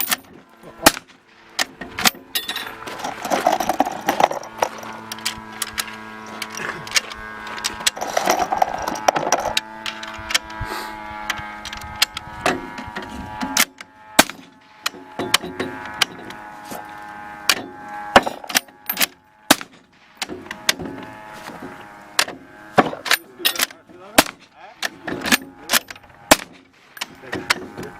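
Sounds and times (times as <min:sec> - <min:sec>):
steady hum: 0:00.0 - 0:27.9
suppressed rifle shots: 0:00.8 - 0:01.2, 0:19.5 - 0:19.8, 0:22.8 - 0:26.6.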